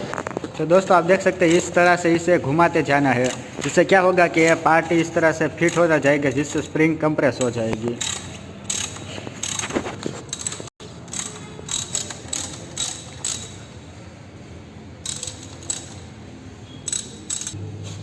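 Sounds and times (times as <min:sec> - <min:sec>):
ratchet wrench clicking: 0:05.6 - 0:06.7, 0:07.4 - 0:09.7, 0:10.3 - 0:13.8, 0:15.0 - 0:17.6.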